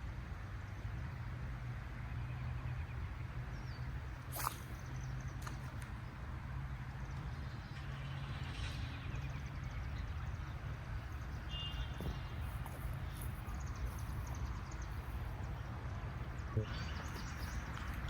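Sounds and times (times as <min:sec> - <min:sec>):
short high chirp: 0:04.3 - 0:04.7.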